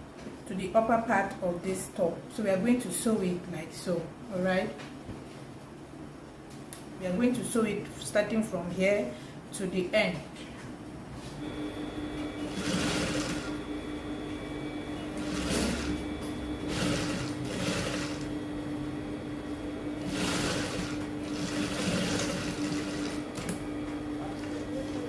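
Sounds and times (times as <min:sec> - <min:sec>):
sewing machine running: 0:12.4 - 0:13.6, 0:15.2 - 0:18.4, 0:20.0 - 0:23.6.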